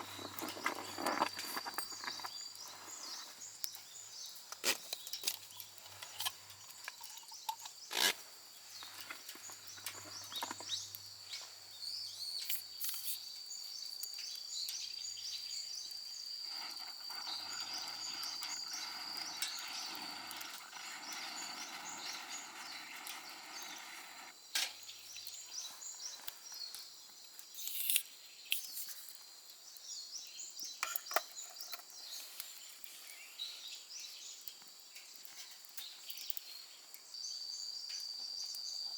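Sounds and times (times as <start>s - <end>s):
campfire crackling and popping: 0.0s - 11.7s, 12.4s - 25.6s
rushing hiss: 16.4s - 24.3s.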